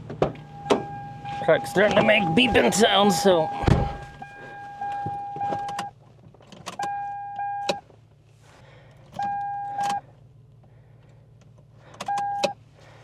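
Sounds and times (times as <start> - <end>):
truck beeping: 0.0 - 6.0, 6.7 - 7.8, 9.2 - 10.1, 11.9 - 12.6.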